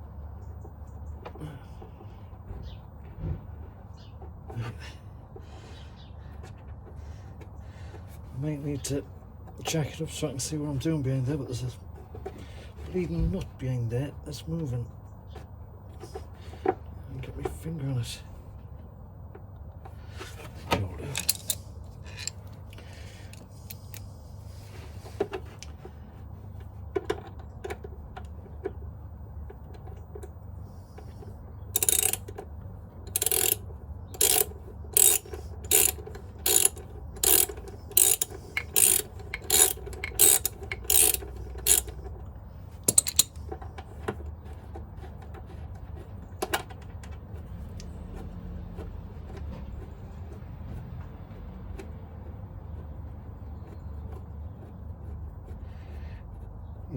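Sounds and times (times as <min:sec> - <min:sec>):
ratchet wrench strokes: 0:21.1 - 0:22.4, 0:31.8 - 0:32.3, 0:33.1 - 0:42.0, 0:42.8 - 0:43.4.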